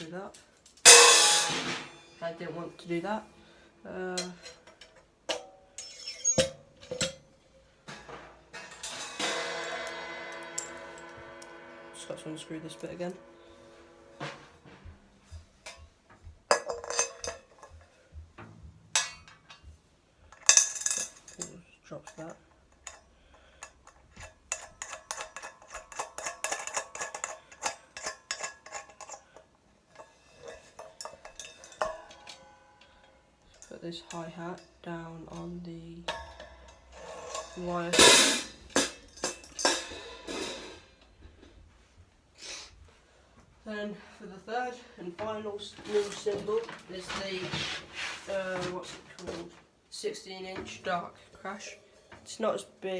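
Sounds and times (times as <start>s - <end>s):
cymbal ringing: 0.8s - 2.8s, 8.5s - 15.4s, 36.1s - 40.8s
metal hardware clinks and knocks: 4.2s - 7.3s, 7.9s - 13.3s, 15.6s - 17.9s, 19.0s - 19.7s, 20.3s - 34.2s, 35.3s - 40.8s
metallic hi-hat clicks: 8.6s - 14.5s.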